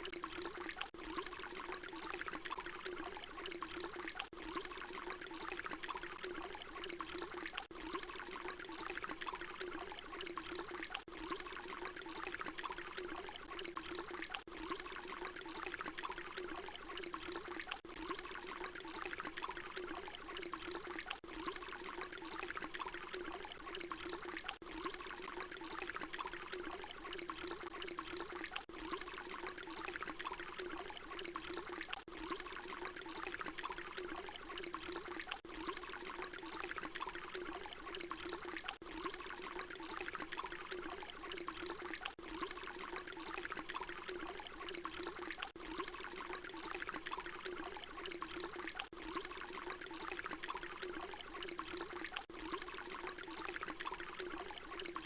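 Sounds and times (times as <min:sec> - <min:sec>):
water pouring and splashing: 0:00.0 - 0:55.0.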